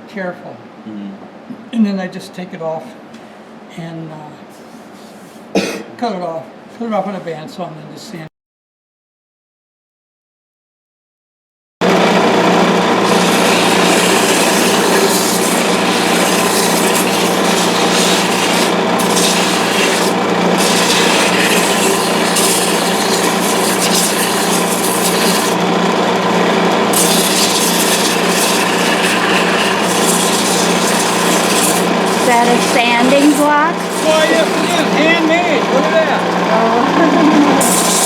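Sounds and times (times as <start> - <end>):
wood lathe humming: 11.8 - 38.0
sanding block rasping on wood: 13.0 - 25.7, 26.4 - 35.5, 37.6 - 38.0.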